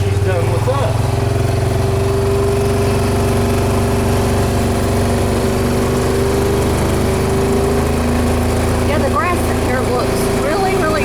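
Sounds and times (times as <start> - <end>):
vehicle engine droning: 0.0 - 11.0.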